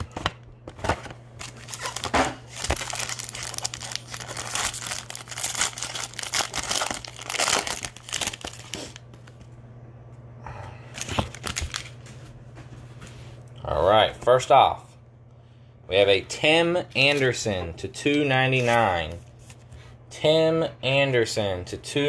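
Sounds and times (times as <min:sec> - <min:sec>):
low electrical hum: 0:00.0 - 0:22.0
plastic wrapping crinkling: 0:01.4 - 0:09.0, 0:11.0 - 0:12.1.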